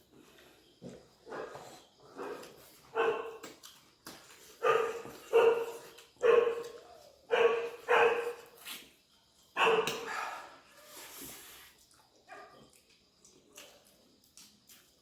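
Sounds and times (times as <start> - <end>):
dog barking: 2.1 - 3.4, 4.6 - 8.5, 9.6 - 10.6.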